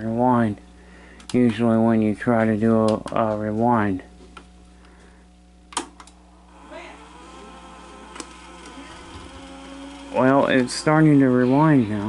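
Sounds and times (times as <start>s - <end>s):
low hum: 3.4s - 12.0s
tape deck motor whirring: 6.0s - 12.0s.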